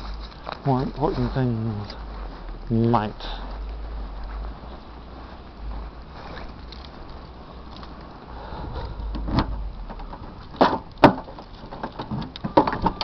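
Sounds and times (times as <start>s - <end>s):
car engine rumbling: 0.0s - 13.0s
thump: 8.6s - 11.4s
sharp knocks: 9.0s - 13.0s.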